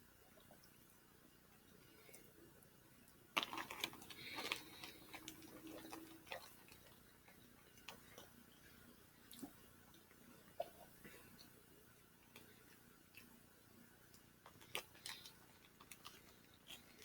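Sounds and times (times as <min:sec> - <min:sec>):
eating clicks and clatter: 0:03.4 - 0:08.4, 0:14.1 - 0:17.0.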